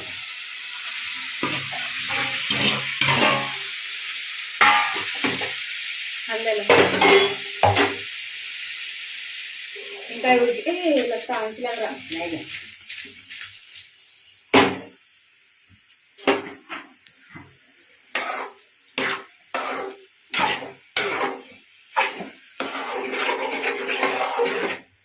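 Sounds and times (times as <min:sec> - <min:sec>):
spoon knocking on pan: 0:04.6 - 0:05.4
spoon scraping while stirring: 0:18.1 - 0:24.9.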